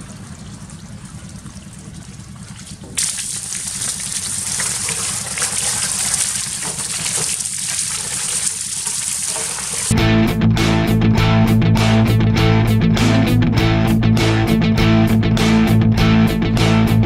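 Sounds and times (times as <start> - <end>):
water gushing and splashing: 0.0 - 10.0.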